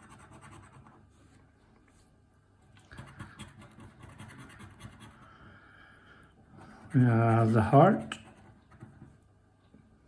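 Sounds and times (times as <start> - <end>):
scratch card being scraped: 0.0 - 1.0.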